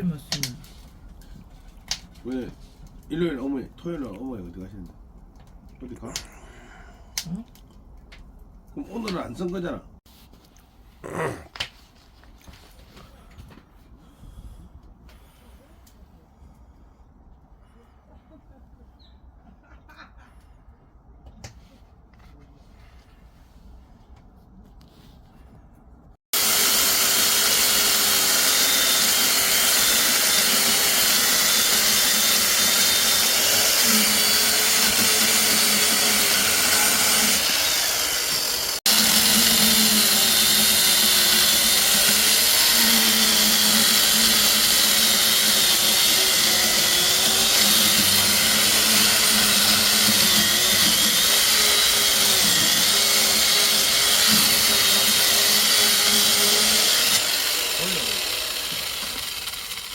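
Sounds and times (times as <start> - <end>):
power tool motor running: 26.3 - 59.9.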